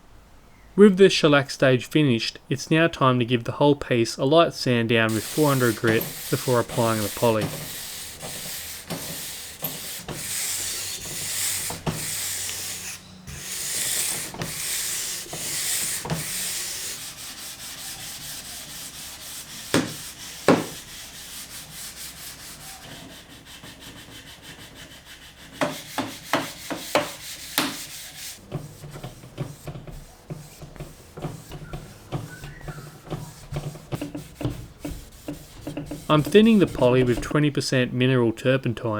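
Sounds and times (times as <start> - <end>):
sandpaper sanding wood: 5.0 - 37.5
sharp knocks: 19.7 - 20.8.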